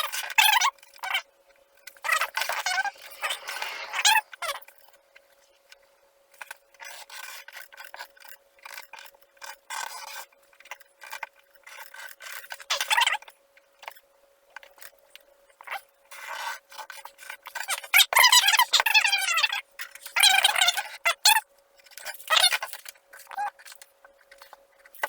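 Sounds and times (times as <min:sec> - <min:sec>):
faint steady hum: 0:00.4 - 0:07.9.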